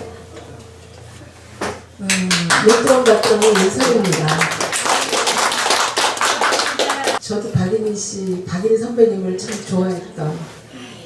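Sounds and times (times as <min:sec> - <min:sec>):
audience applauding: 0:02.1 - 0:07.2.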